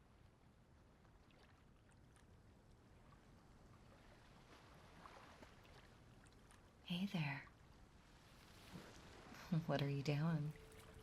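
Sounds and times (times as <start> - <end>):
water lapping and sloshing: 0.0 - 11.0
small watery ticks: 0.9 - 4.1.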